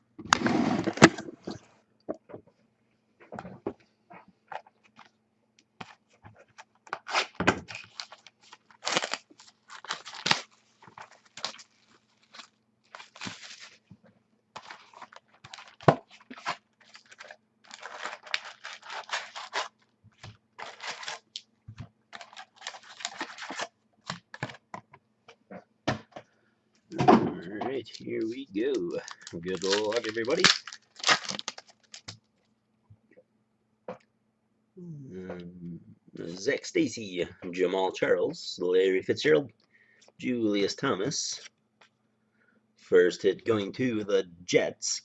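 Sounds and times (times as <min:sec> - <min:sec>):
plastic wrapping being torn and crinkled: 0:06.6 - 0:13.9, 0:14.6 - 0:21.5, 0:22.1 - 0:24.6, 0:27.8 - 0:32.5.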